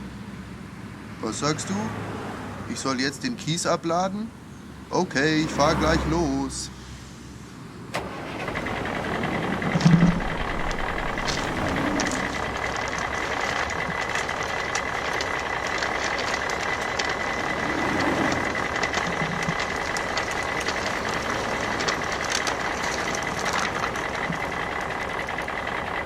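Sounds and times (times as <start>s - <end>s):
toy truck running: 5.1s - 6.4s, 8.0s - 26.0s
small clicks and rattles: 8.5s - 26.0s.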